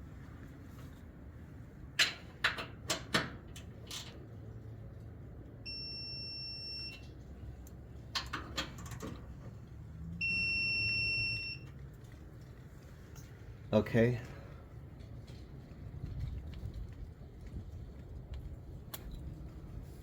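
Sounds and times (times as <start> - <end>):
torque adapter beep: 5.7 - 7.1, 10.2 - 11.6.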